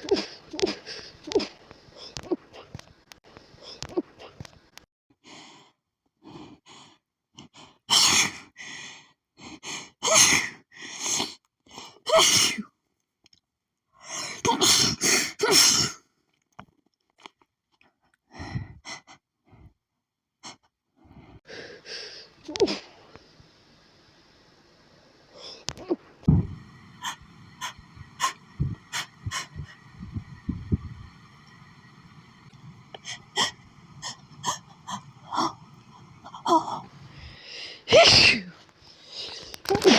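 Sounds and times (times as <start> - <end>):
woman sniffing and breathing: 0.0 - 4.6, 20.4 - 23.2
woman sneezing: 37.9 - 38.6.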